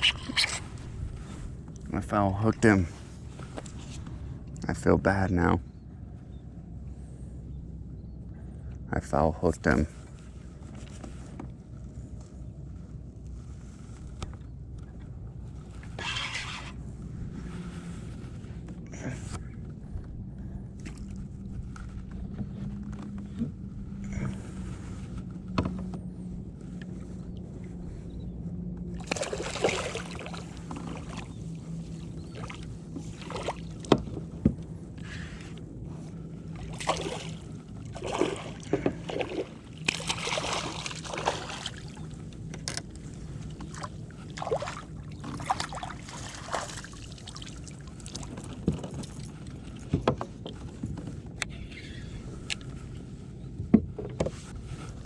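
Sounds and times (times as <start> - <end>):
water splashing and sloshing: 0.0 - 2.0, 15.0 - 28.0, 28.8 - 53.1
knocks and clicks on kayak hull: 33.7 - 34.7.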